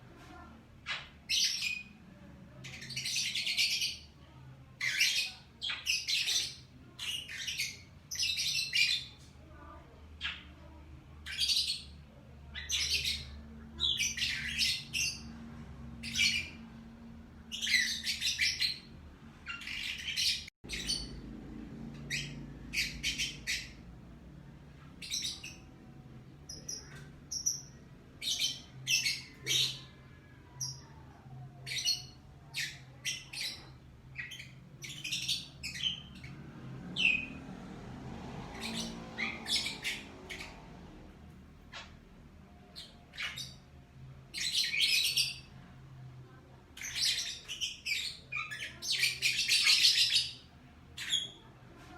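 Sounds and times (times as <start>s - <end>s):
lovebirds chirping and squawking: 0.2s - 51.9s.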